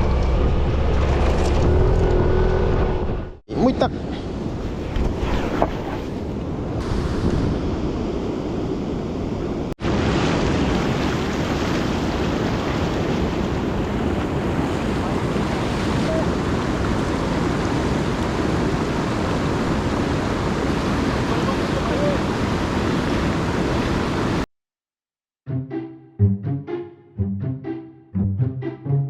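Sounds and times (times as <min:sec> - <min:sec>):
rushing water: 0:09.8 - 0:24.5.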